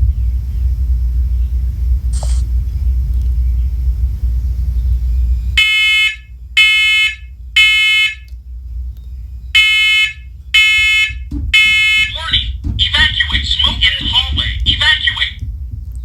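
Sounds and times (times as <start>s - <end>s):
low rumble: 0.0s - 16.0s
smoke alarm beeping: 5.6s - 8.3s, 9.6s - 15.4s.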